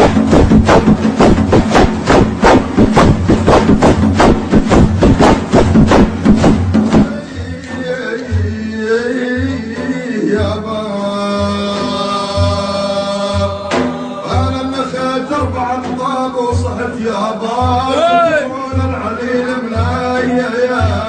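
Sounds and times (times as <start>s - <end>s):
sharp percussive hits: 0.0s - 8.6s, 11.5s - 16.8s
low drum beat: 0.0s - 20.2s.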